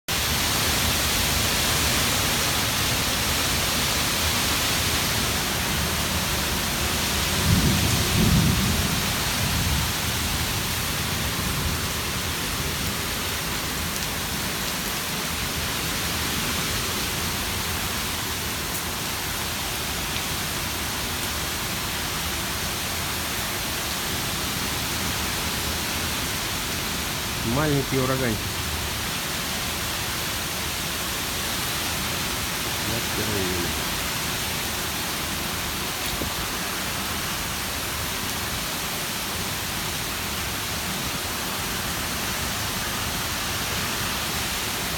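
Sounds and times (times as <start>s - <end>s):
heavy rain hissing: 0.1s - 44.9s
strong wind: 0.2s - 19.8s, 33.8s - 38.0s.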